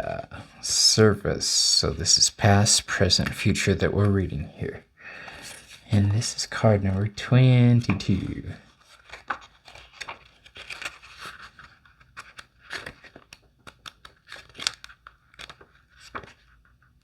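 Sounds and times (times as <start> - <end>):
paper pages rustling: 5.2 - 6.7, 8.1 - 16.9.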